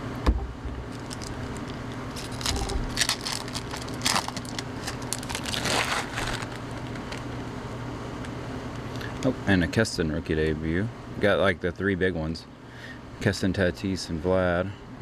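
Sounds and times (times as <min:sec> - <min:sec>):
cards being flipped through: 0:00.9 - 0:07.4.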